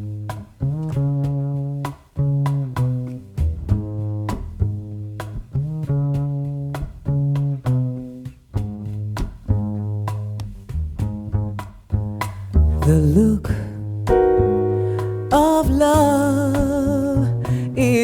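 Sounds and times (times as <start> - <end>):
slow instrumental love song: 12.8 - 18.0.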